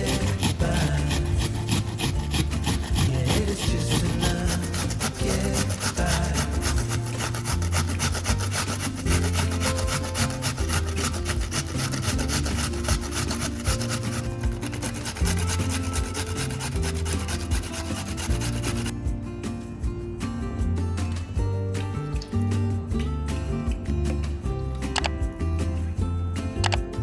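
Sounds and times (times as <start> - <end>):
potato rasping on grater: 0.0 - 18.9
background music with beat: 0.0 - 27.0.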